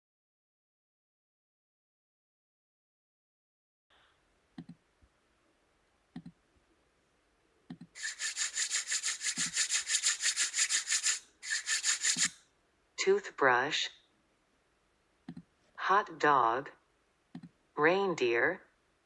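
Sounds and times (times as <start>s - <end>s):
soft clicks: 4.6s - 4.8s, 6.1s - 6.4s, 7.7s - 8.0s, 15.2s - 15.5s, 17.3s - 17.6s
scratchy rubbing: 8.0s - 12.4s.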